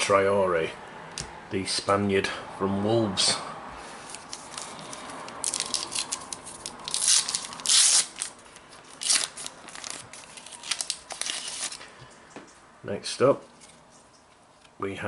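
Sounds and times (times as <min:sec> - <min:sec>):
wrapper crinkling: 0:04.1 - 0:12.0
card packet wrapper tearing: 0:04.2 - 0:11.8.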